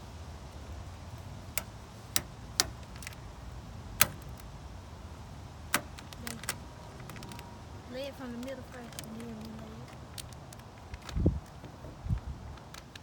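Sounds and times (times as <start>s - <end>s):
steady low rumble: 0.0s - 13.0s
sharp clicks: 1.5s - 3.2s, 4.0s - 4.5s, 5.7s - 7.4s.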